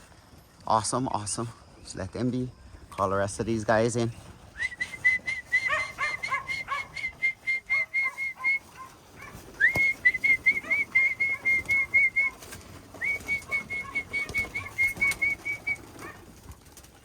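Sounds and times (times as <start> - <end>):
person whistling short notes: 4.6 - 8.7, 9.6 - 12.4, 13.0 - 15.8.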